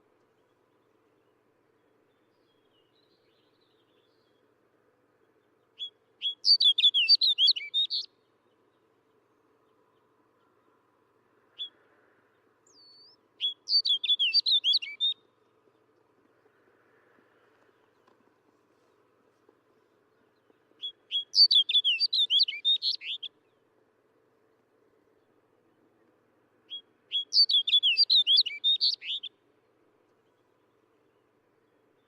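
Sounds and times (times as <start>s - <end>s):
bird song warbling: 5.2s - 10.8s, 12.4s - 15.9s, 19.8s - 23.7s, 26.7s - 29.4s.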